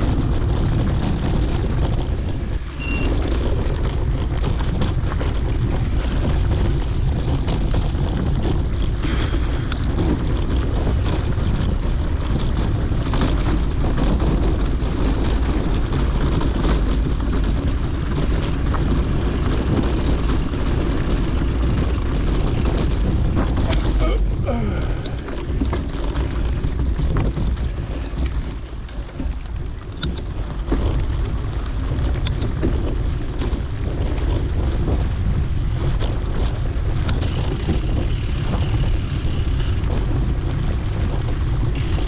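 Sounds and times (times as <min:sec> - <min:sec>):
bike tyres rolling on dirt: 0:00.0 - 0:42.0
small rattles and knocks: 0:00.0 - 0:42.0
wind on microphone: 0:00.0 - 0:42.0.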